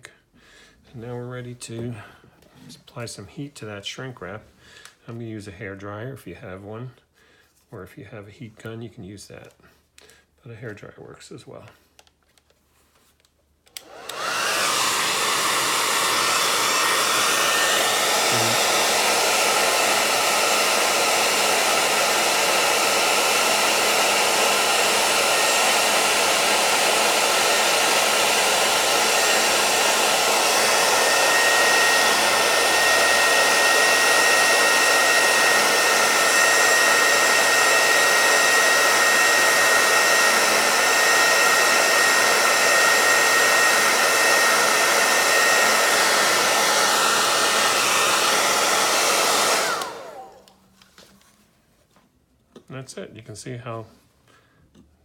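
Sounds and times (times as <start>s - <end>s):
hair dryer whining: 13.6s - 51.2s.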